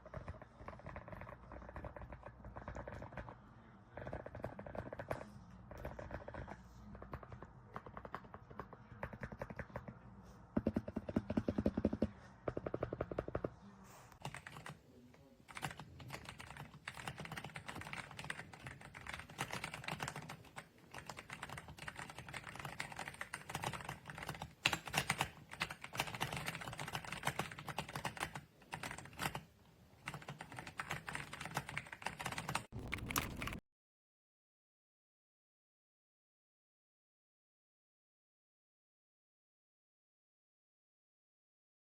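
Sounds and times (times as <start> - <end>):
mechanical keyboard typing: 0.0 - 3.4, 4.0 - 9.9, 14.2 - 14.8, 15.5 - 33.6.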